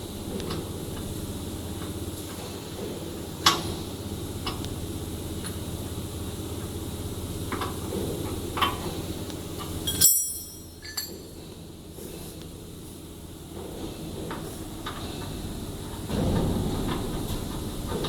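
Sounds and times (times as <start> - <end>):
metal clinks and knocks: 9.8 - 11.3
low hum: 14.2 - 18.0.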